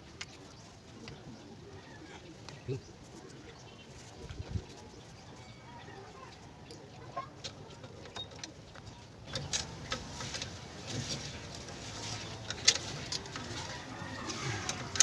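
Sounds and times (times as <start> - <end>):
faint birds calling: 0.0 - 15.0.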